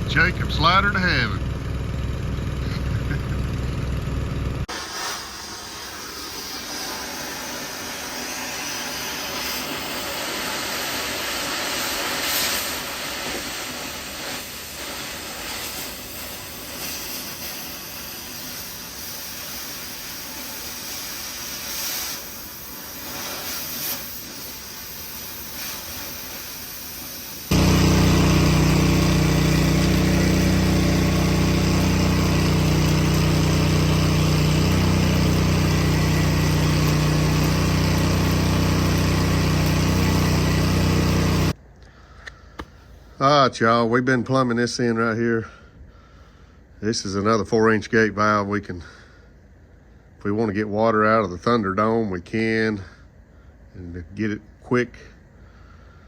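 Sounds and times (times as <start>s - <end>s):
engine running steadily: 0.0s - 4.7s, 27.5s - 41.6s
steady hissing noise: 4.7s - 28.2s.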